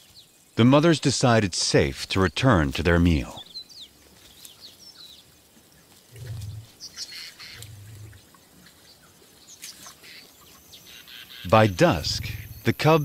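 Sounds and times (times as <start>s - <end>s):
small birds chirping: 0.0s - 13.0s
lions growling: 6.1s - 6.8s, 7.4s - 8.7s.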